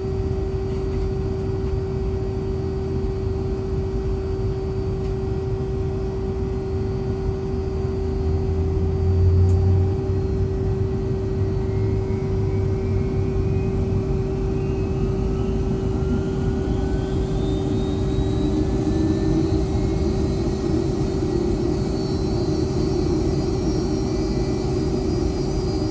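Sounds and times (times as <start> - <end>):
cabin hum and low rumble: 0.0 - 15.8
jet engine whine spooling up: 0.0 - 25.9.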